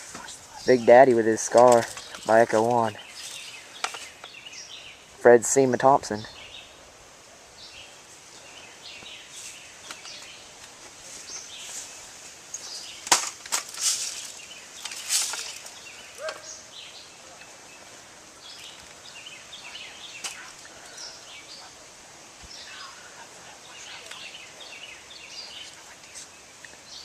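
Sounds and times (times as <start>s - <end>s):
birds chirping: 0.0s - 27.0s.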